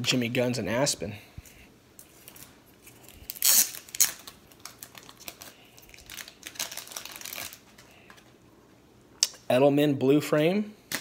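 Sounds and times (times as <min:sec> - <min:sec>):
plastic sleeves rustling: 0:02.0 - 0:08.4.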